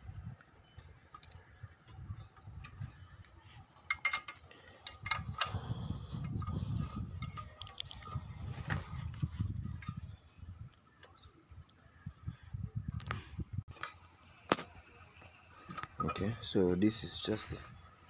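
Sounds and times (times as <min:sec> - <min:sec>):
light metallic clicks and taps: 0:01.1 - 0:08.2.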